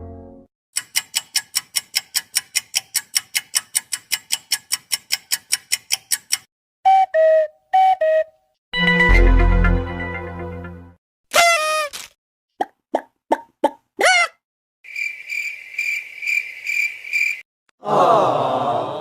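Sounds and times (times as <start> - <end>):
sustained musical chord with bass: 8.8 - 11.0.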